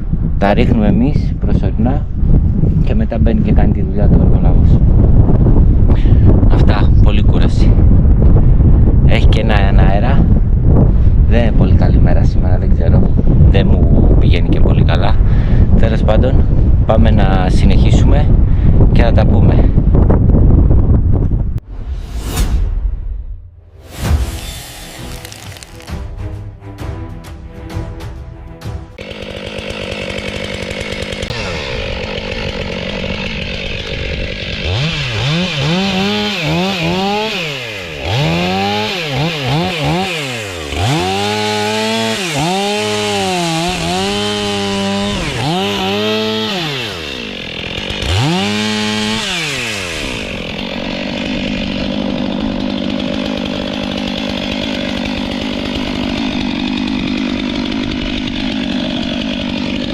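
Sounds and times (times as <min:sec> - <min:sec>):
chainsaw running: 0:24.2 - 0:26.1, 0:29.0 - 0:59.9.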